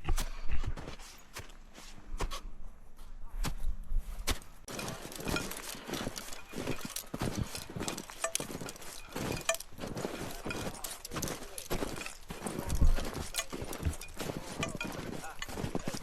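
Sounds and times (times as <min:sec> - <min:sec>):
climbing footsteps: 0:04.0 - 0:16.0
metal gear clinking: 0:04.7 - 0:16.0.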